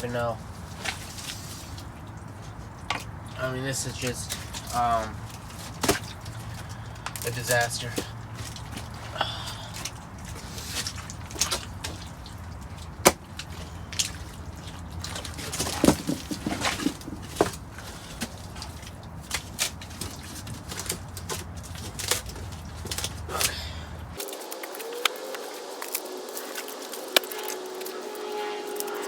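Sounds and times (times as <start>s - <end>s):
plywood knocking and scraping: 15.1s - 23.5s.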